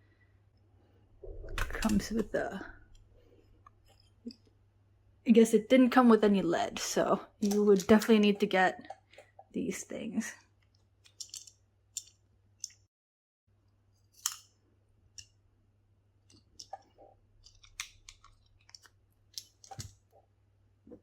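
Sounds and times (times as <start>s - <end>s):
pencil handling clicks and taps: 10.7s - 12.8s, 15.1s - 15.4s, 16.2s - 20.0s.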